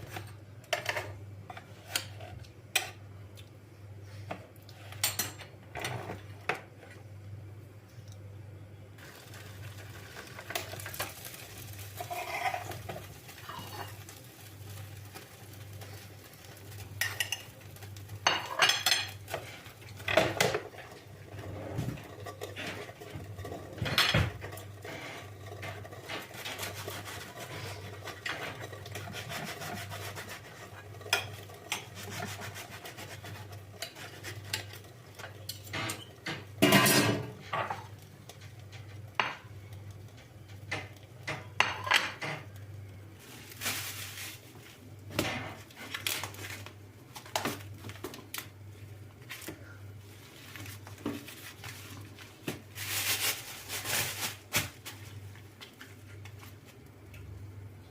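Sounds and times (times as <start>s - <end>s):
dishes and utensils clinking: 4.9s - 6.2s, 18.2s - 19.4s, 33.7s - 38.0s.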